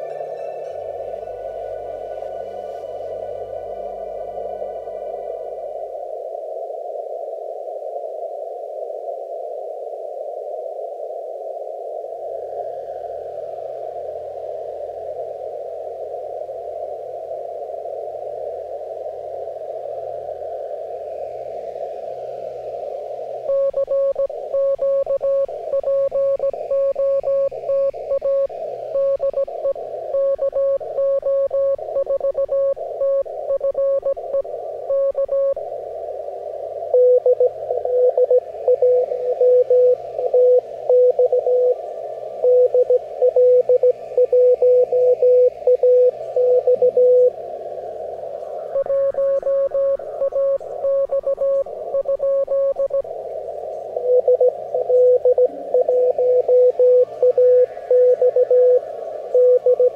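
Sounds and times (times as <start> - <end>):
receiver hiss: 0.0 - 59.9
morse code tones: 23.5 - 35.6, 36.9 - 41.8, 42.4 - 47.3, 48.8 - 53.0, 54.0 - 58.8, 59.4 - 59.9.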